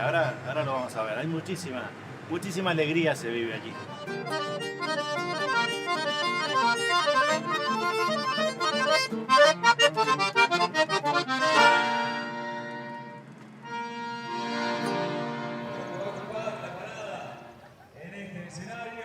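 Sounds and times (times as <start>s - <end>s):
accordion playing folk music: 3.4s - 17.6s.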